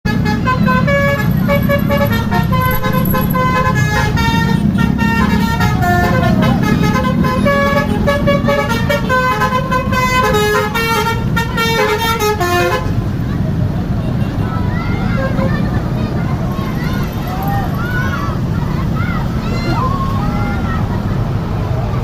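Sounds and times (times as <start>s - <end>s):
musical bus horn melody: 0.1s - 13.0s.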